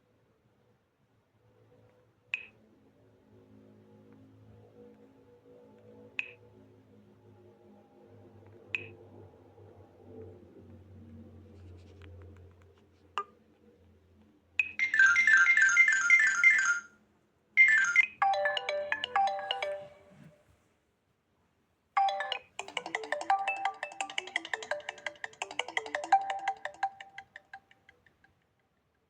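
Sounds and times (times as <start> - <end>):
smartphone ringtones: 14.7 - 16.9, 17.6 - 20.4, 22.0 - 27.8.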